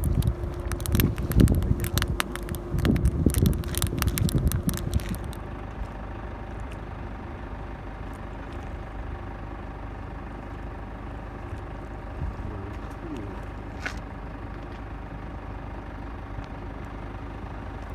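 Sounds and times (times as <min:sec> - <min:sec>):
sharp clicks and rattles: 0:00.0 - 0:05.5
low engine hum: 0:00.0 - 0:17.9.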